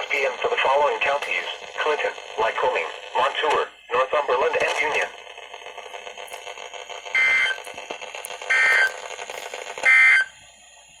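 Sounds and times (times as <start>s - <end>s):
radio hiss: 0.0s - 11.0s
two-tone digital squawks: 7.1s - 7.6s, 9.8s - 10.3s.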